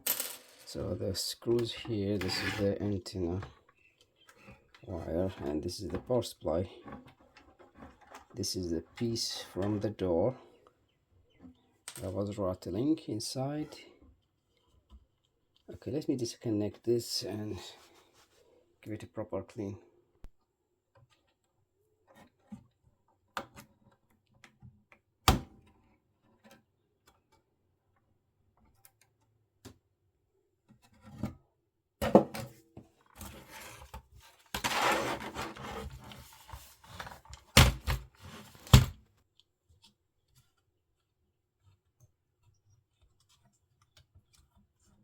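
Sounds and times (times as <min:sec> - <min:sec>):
plastic parts clicking and knocking: 0:32.0 - 0:39.5
rubbing and rustling: 0:33.0 - 0:39.0.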